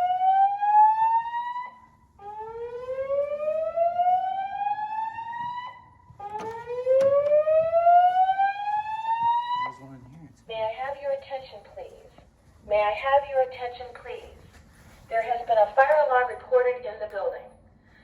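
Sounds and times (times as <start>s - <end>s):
fire alarm whoop tone: 0.0s - 9.9s.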